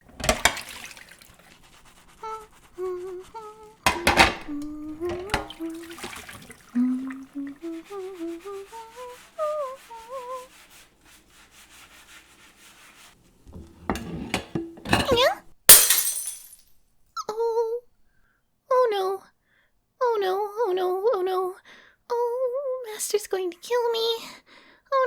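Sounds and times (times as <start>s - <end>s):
dishes clattering: 0.0s - 1.3s, 3.8s - 6.6s, 13.6s - 16.6s
scrubbing: 0.0s - 16.4s
woman humming: 2.2s - 3.8s, 4.4s - 10.4s.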